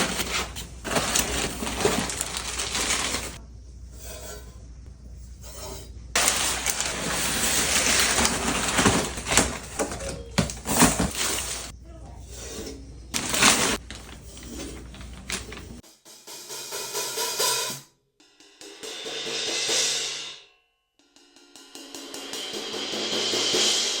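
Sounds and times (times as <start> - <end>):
drum kit playing: 15.6 - 20.4, 21.2 - 24.0.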